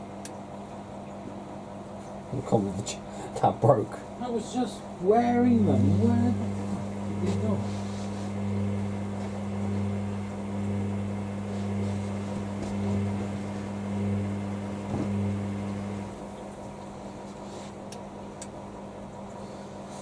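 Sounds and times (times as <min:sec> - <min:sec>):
washer dryer humming: 0:04.0 - 0:19.9.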